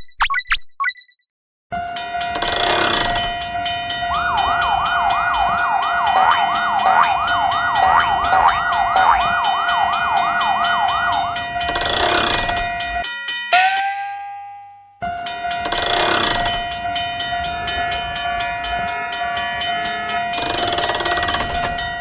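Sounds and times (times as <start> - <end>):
crossing warning bell ringing: 1.8 - 22.0
yelping siren: 3.7 - 13.0.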